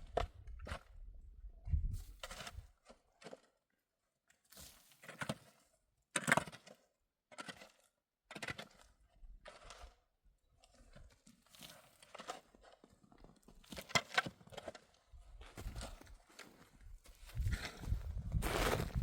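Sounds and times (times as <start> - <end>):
snow crunching: 17.7 - 19.0.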